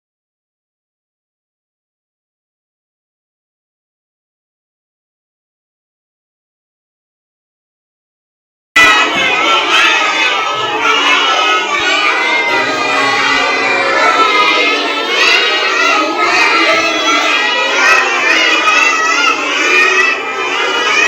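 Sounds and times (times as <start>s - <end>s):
children's voices overlapping: 8.8s - 21.0s.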